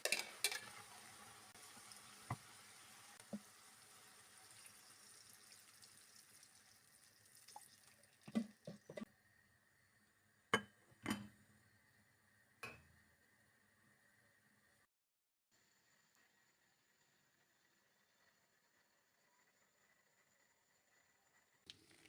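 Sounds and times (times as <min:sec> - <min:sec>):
kitchenware knocks and clinks: 0:00.0 - 0:00.8, 0:10.6 - 0:11.4.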